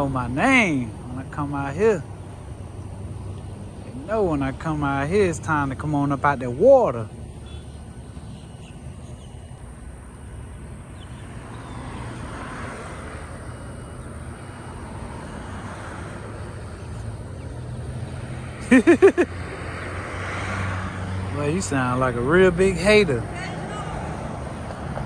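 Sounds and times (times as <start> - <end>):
person speaking loudly: 0.0 - 2.1, 3.9 - 7.1, 21.4 - 24.2
road traffic rumble: 0.0 - 25.0.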